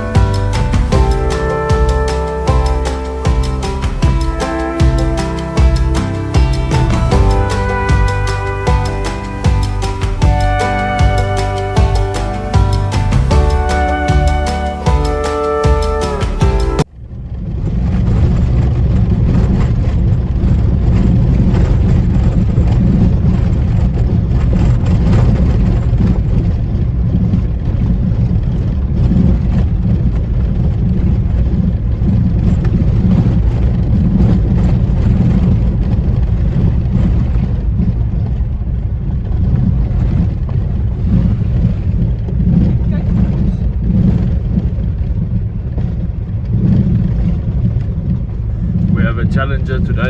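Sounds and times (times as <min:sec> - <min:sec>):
music: 0:00.0 - 0:16.9
moving vehicle rumble: 0:00.0 - 0:50.0.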